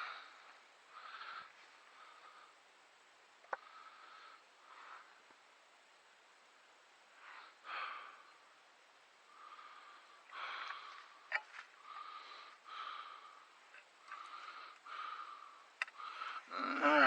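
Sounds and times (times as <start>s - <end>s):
man breathing hard: 0.0s - 2.6s, 7.2s - 8.4s, 9.3s - 16.8s
sharp clicks: 15.8s - 16.0s.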